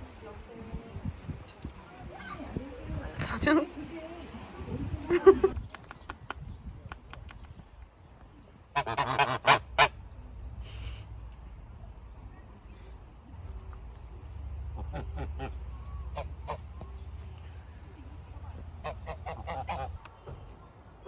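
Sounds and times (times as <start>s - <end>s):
birds calling: 8.7s - 11.0s, 12.1s - 20.4s.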